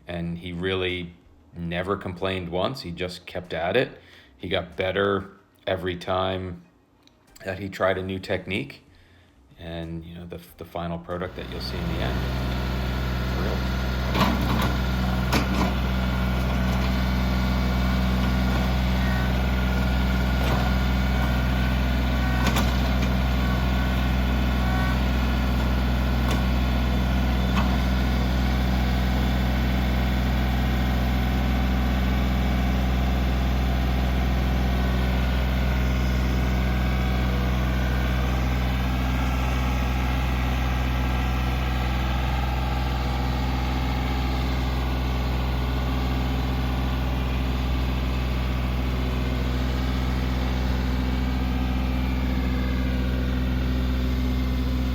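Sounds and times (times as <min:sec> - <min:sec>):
tractor diesel engine running: 0:11.2 - 0:54.9.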